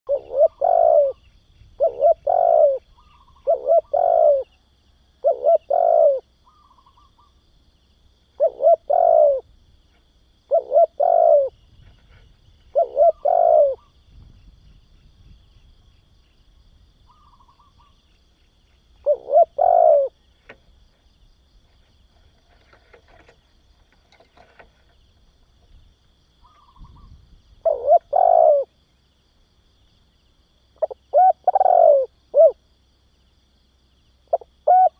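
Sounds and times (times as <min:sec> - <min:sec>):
dove cooing: 0:00.1 - 0:01.2, 0:01.8 - 0:04.6, 0:05.2 - 0:07.4, 0:08.3 - 0:09.5, 0:10.4 - 0:14.0, 0:17.1 - 0:18.0, 0:19.0 - 0:20.3, 0:26.4 - 0:28.8, 0:30.8 - 0:32.6, 0:34.3 - 0:34.9.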